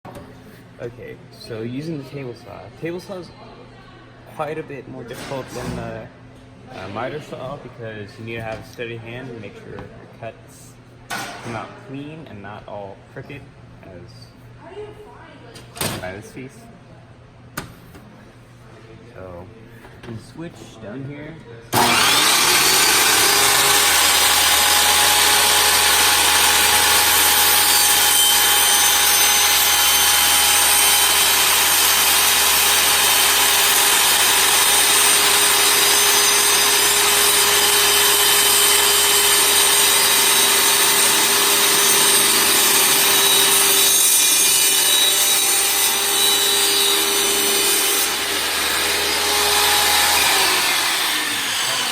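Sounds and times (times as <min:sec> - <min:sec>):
table saw cutting wood: 0:21.7 - 0:51.9.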